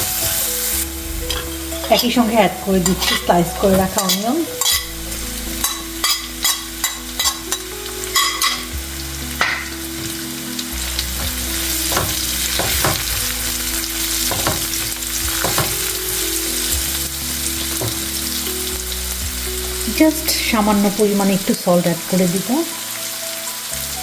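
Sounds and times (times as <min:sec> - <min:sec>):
onion sizzling in hot oil: 0:00.0 - 0:24.0
spatula scraping a pan: 0:00.7 - 0:08.7
spatula tapping: 0:02.8 - 0:04.9, 0:11.2 - 0:13.3.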